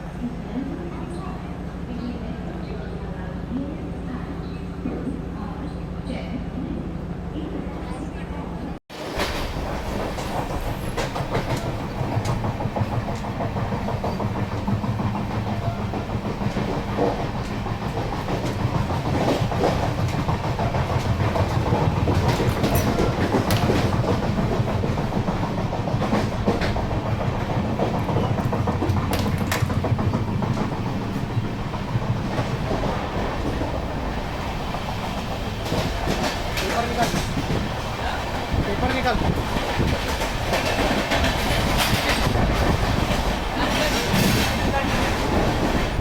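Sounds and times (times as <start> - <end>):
train engine drone: 0.0 - 46.0
wheels clacking over rail joints: 8.9 - 46.0.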